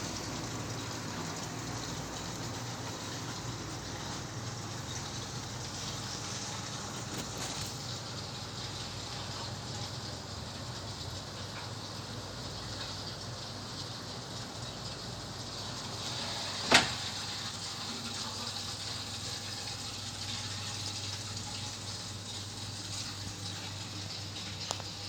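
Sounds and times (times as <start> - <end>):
heat pump running: 0.0 - 25.0.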